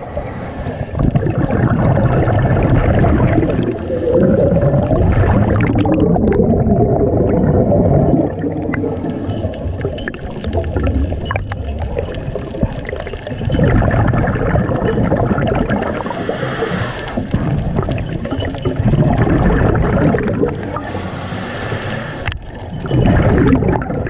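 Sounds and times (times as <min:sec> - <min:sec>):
underwater exhaust bubbles gurgling: 0:00.0 - 0:24.0
faint clicks: 0:21.8 - 0:23.0.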